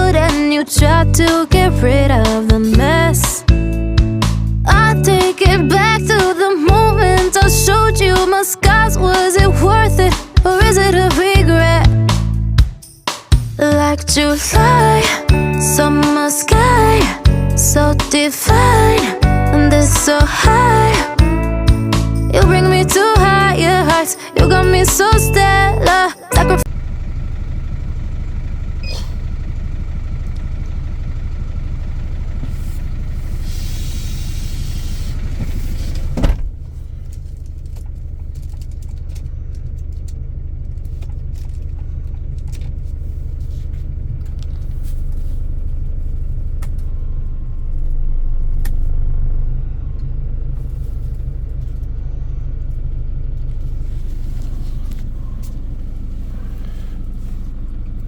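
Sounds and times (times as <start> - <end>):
truck engine rumbling: 0.0 - 12.8, 13.4 - 58.0
hiss: 32.5 - 36.2
sharp thump: 35.4 - 36.6.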